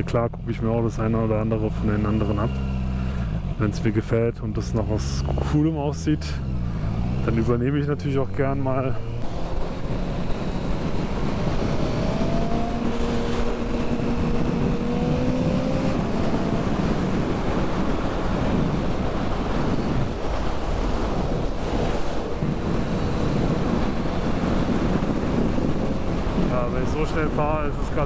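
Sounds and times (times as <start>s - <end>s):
road noise: 0.0s - 28.0s
motorcycle engine accelerating: 0.9s - 28.0s
wind noise: 8.2s - 28.0s.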